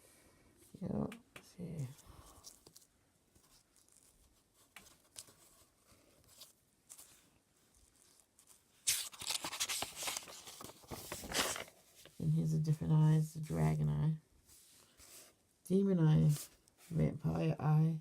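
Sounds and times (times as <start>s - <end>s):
paper rustling and crinkling: 1.8s - 12.2s.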